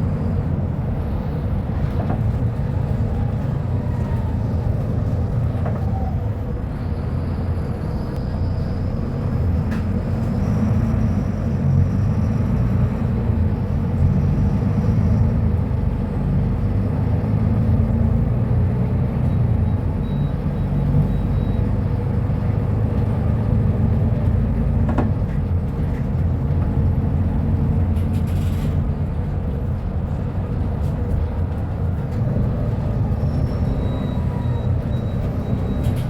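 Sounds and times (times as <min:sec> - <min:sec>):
bus diesel engine rumbling: 0:00.0 - 0:36.0.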